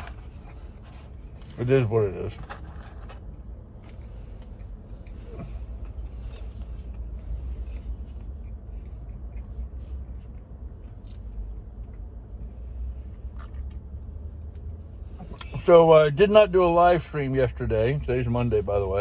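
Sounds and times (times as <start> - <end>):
clicks and crinkles of handling: 0.0 - 4.5
steady low rumble: 0.0 - 19.0
person chewing food: 4.0 - 15.5.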